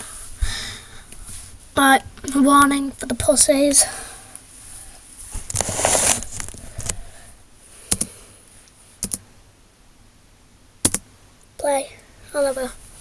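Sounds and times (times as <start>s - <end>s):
rustle close to microphone: 5.2s - 7.0s
sharp clicks: 7.9s - 8.1s, 9.0s - 9.2s, 10.8s - 11.1s.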